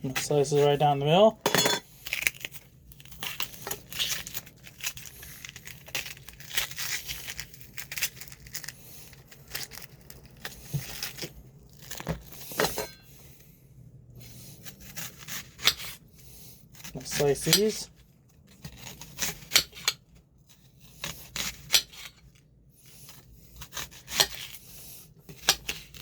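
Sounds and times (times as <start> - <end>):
knife cutting onion: 14.2 - 16.0, 16.6 - 17.9, 18.6 - 26.0.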